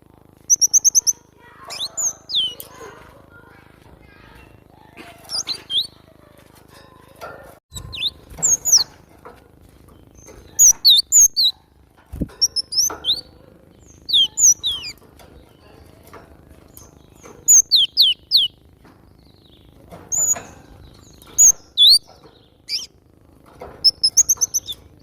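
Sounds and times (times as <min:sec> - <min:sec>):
bird whistling song: 0:00.5 - 0:02.7, 0:05.3 - 0:06.0, 0:07.8 - 0:08.9, 0:10.2 - 0:11.6, 0:12.4 - 0:15.0, 0:17.1 - 0:18.6, 0:21.0 - 0:23.0, 0:23.8 - 0:24.8.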